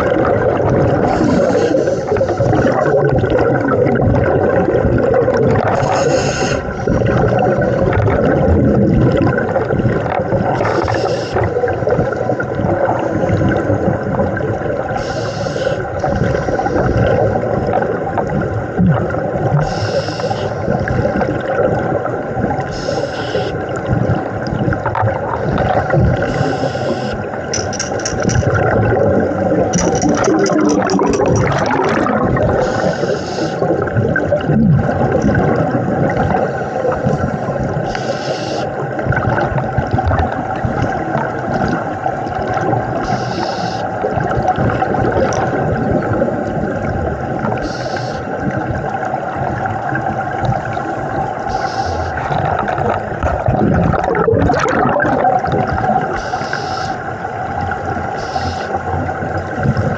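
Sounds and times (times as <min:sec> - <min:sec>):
exhaled air bubbling: 0:00.0 - 0:59.9
regulator inhalation hiss: 0:01.1 - 0:02.5, 0:05.9 - 0:06.6, 0:10.7 - 0:11.4, 0:15.0 - 0:17.1, 0:19.6 - 0:20.6, 0:22.7 - 0:23.6, 0:26.2 - 0:27.2, 0:32.6 - 0:33.7, 0:37.9 - 0:38.7, 0:43.1 - 0:43.9, 0:47.6 - 0:48.3, 0:51.5 - 0:52.2, 0:56.2 - 0:57.0, 0:58.2 - 0:58.8.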